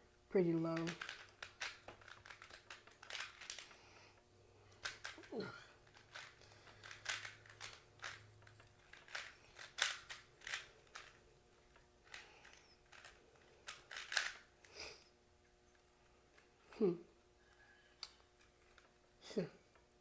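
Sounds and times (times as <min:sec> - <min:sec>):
plastic puzzle clicking: 0:00.7 - 0:03.8, 0:04.7 - 0:14.5.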